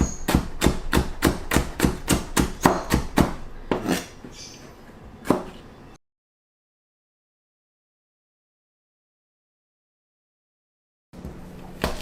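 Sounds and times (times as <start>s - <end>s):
knife chopping on cutting board: 0.0s - 4.1s, 5.2s - 5.6s, 11.8s - 12.0s.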